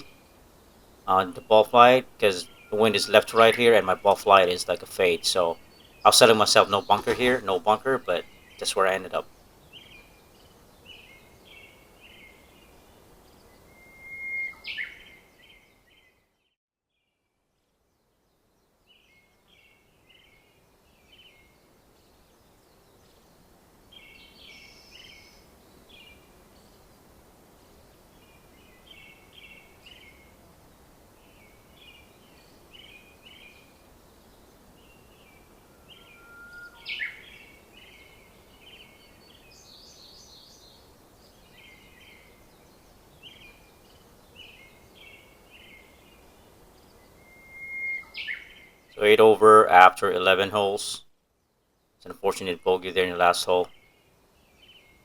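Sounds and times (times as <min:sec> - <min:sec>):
low background hiss: 0:00.0 - 0:16.2, 0:17.5 - 0:55.0
songbirds singing: 0:00.0 - 0:16.3, 0:17.8 - 0:55.0.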